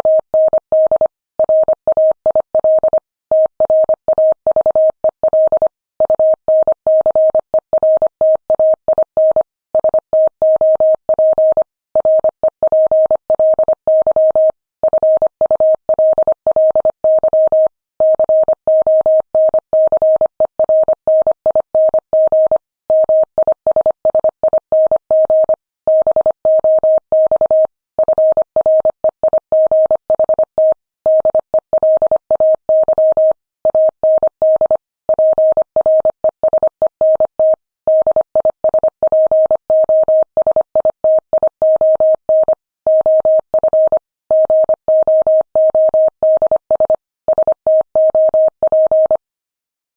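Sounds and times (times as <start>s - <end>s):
morse code tone: 32.8s - 49.2s.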